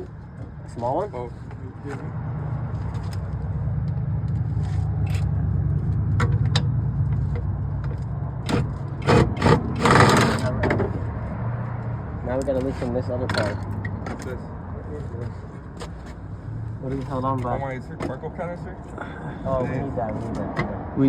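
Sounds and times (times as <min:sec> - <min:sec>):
vehicle engine humming: 0:00.0 - 0:21.0
metal parts clicking and scraping: 0:08.5 - 0:10.5
scraping and rattling: 0:08.5 - 0:11.0.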